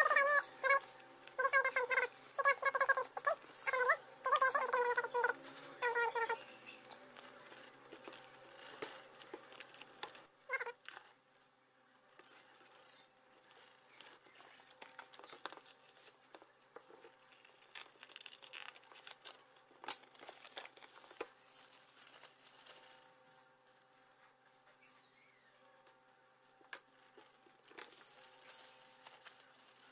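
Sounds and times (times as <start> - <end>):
packaging crinkling: 13.5 - 23.4.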